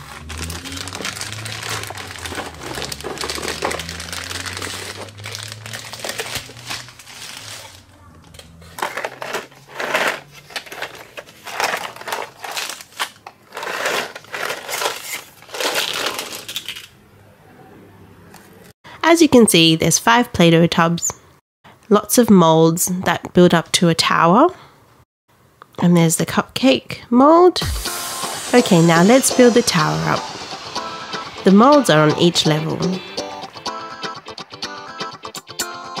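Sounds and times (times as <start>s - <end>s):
packaging crinkling and rustling: 0.0s - 17.0s.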